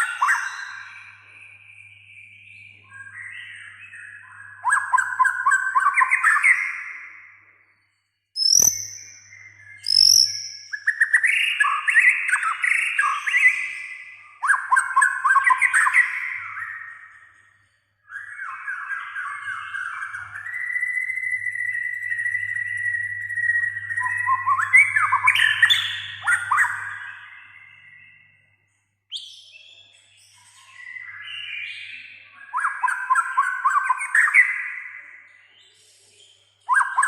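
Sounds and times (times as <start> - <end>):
bird singing warbled notes: 0.0 - 7.7, 8.4 - 29.2.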